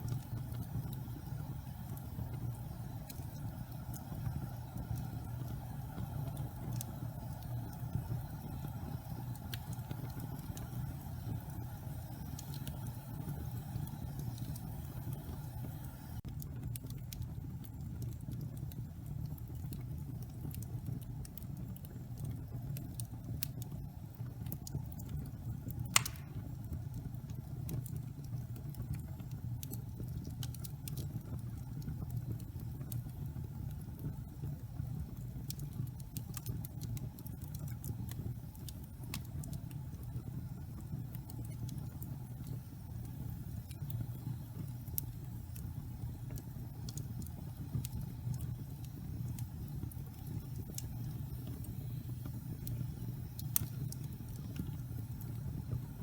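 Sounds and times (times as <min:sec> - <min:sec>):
fire crackling: 0:00.0 - 0:56.0
fire rumbling in fireplace: 0:00.0 - 0:56.0
sharp loud pop of fire: 0:25.9 - 0:26.4.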